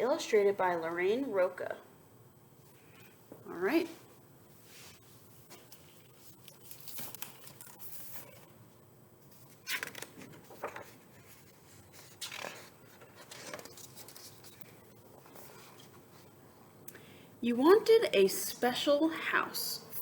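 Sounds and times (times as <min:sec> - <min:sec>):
book pages rustling: 0:04.6 - 0:08.5, 0:09.3 - 0:16.4.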